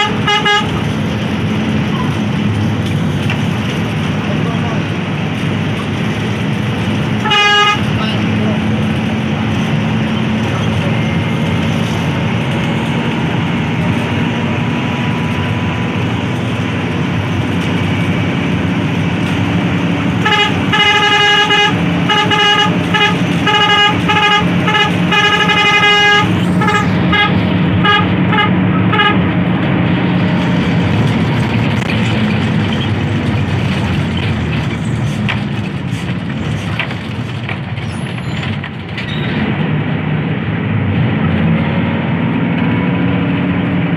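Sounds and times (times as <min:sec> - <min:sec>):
bus horn tooting: 0:00.0 - 0:01.1, 0:07.1 - 0:09.0, 0:17.0 - 0:29.4
bus engine and road noise: 0:00.0 - 0:43.9.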